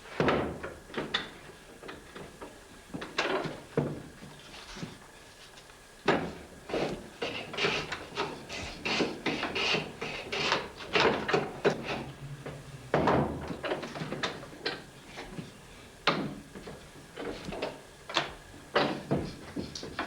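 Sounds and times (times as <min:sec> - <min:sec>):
hand plane strokes on wood: 0:06.7 - 0:12.6.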